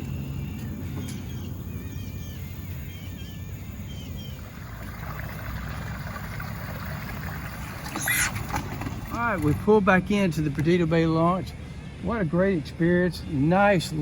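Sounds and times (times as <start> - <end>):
birds chirping: 0.0 - 14.0
outboard motor running: 3.9 - 9.9.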